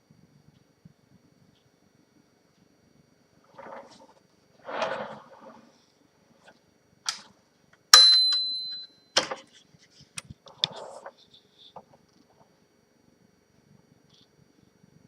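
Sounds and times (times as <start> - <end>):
typewriter margin bell ding: 8.0 - 9.0.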